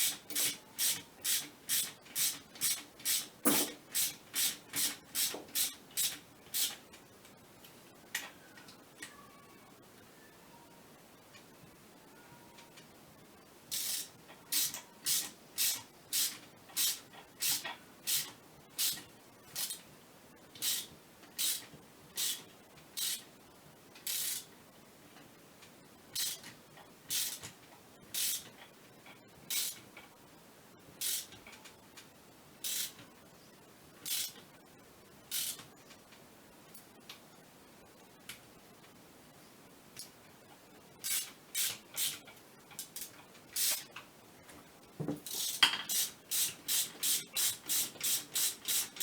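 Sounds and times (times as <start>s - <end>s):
ratchet wrench rasping: 13.7s - 19.0s, 20.6s - 22.4s, 28.2s - 28.5s, 32.6s - 33.0s.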